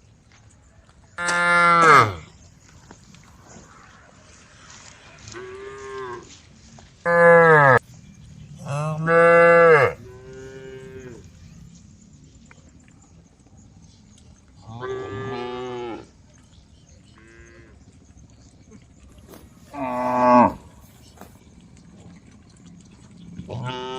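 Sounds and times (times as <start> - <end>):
cows mooing: 1.2 - 2.3, 7.1 - 7.8, 8.6 - 11.3, 14.6 - 16.1, 19.7 - 20.9, 23.4 - 23.9.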